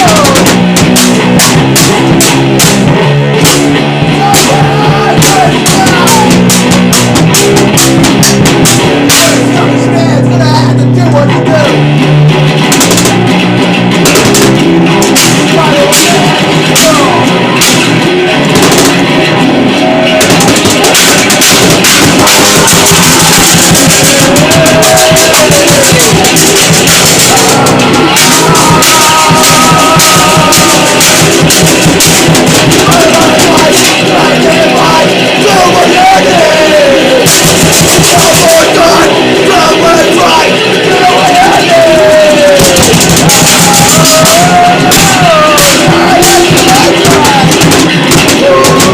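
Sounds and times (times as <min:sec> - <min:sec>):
distorted guitar: 0:00.0 - 0:48.9
drum kit playing: 0:00.0 - 0:48.9
sliding bending pitched lines: 0:11.8 - 0:48.9.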